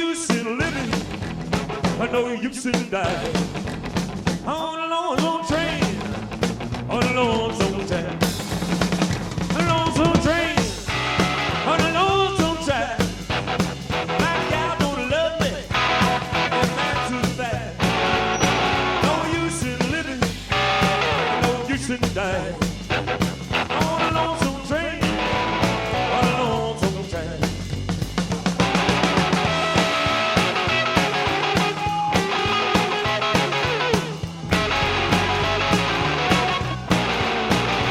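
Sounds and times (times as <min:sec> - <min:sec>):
bass and drum beat: 0:00.0 - 0:37.9
rockabilly band playing: 0:00.0 - 0:37.9
electric guitar bending lines: 0:13.3 - 0:21.7, 0:28.5 - 0:37.9.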